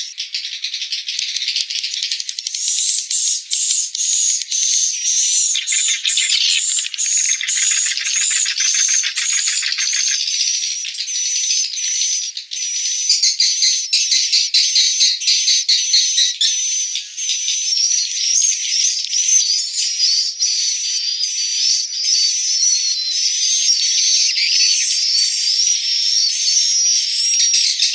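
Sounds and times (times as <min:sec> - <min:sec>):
swiftlets twittering: 0:05.3 - 0:10.3
fast rattling ticking: 0:05.6 - 0:10.2.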